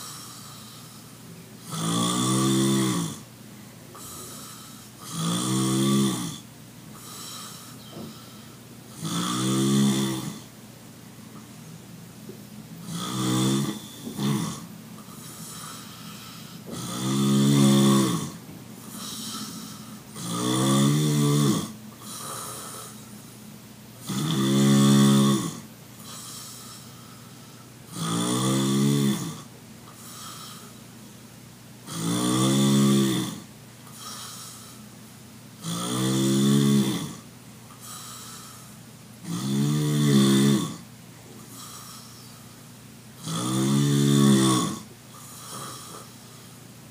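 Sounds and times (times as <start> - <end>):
soft breathing: 0.0 - 1.4, 3.5 - 5.0, 6.9 - 8.7, 15.0 - 16.8, 18.8 - 20.2, 26.0 - 27.9, 29.9 - 31.3, 33.8 - 35.2, 37.7 - 38.9, 41.4 - 42.8, 45.1 - 46.7
person snoring: 0.0 - 3.2, 3.9 - 10.5, 12.8 - 23.2, 24.0 - 30.8, 31.9 - 34.8, 35.6 - 40.8, 41.4 - 42.6, 43.2 - 46.6.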